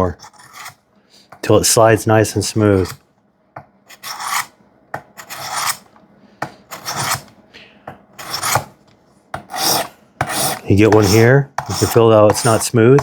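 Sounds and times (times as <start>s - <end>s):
knife blade rasping on sharpening stone: 0.2s - 0.8s, 3.9s - 4.5s, 5.2s - 5.8s, 6.7s - 7.2s, 8.2s - 8.6s, 9.5s - 12.7s.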